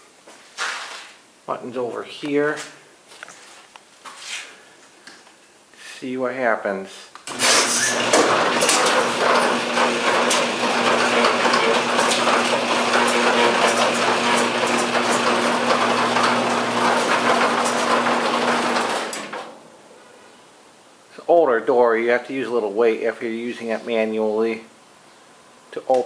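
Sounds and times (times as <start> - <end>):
garage door rattling: 7.3 - 19.6
garage door opener motor humming: 7.3 - 19.8.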